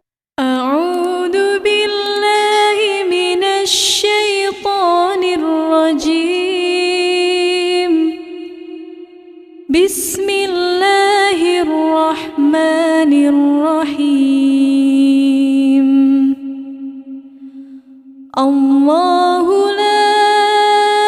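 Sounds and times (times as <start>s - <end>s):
person chanting recitation: 0.4s - 17.2s, 18.4s - 21.0s
quick breath: 17.3s - 18.1s.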